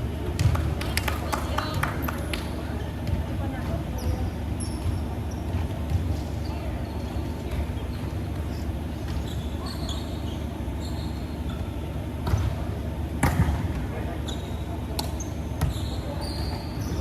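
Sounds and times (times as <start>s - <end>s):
large hall rumble: 0.0s - 17.0s
sneakers squeaking on court floor: 3.1s - 17.0s
sharp ball impacts: 12.2s - 13.9s.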